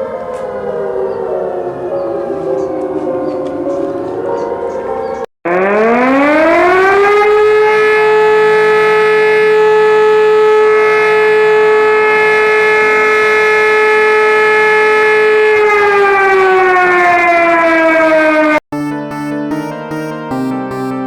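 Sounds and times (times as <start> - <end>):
warning siren wailing: 5.5 - 21.0.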